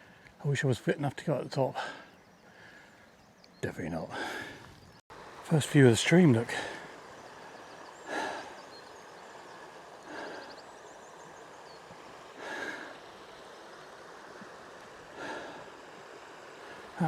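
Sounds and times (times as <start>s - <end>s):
stream rushing: 5.1s - 17.0s
person breathing hard: 8.0s - 8.6s, 10.0s - 10.6s, 12.4s - 13.1s, 15.1s - 15.8s.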